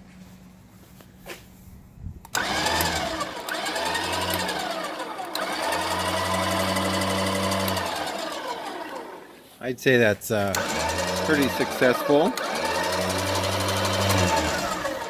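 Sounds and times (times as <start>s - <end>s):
electric winch motor whining: 2.3s - 9.4s, 10.5s - 15.0s.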